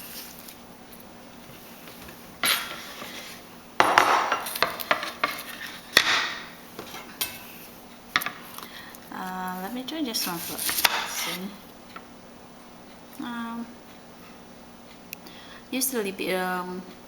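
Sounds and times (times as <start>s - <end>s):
knife cutting fruit: 9.5s - 11.6s.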